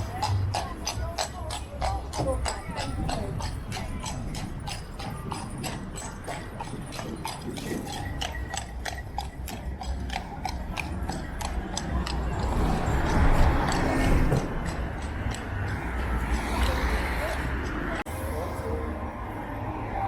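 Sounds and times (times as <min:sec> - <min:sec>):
horse hooves clip-clopping: 0:00.0 - 0:18.0.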